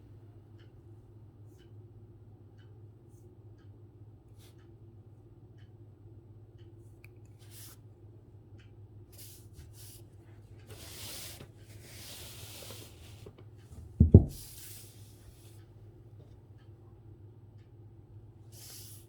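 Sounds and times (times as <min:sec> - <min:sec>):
brush strokes on paper: 0:09.2 - 0:10.0, 0:14.3 - 0:15.6, 0:18.6 - 0:19.0
low knock against desk: 0:13.8 - 0:14.5.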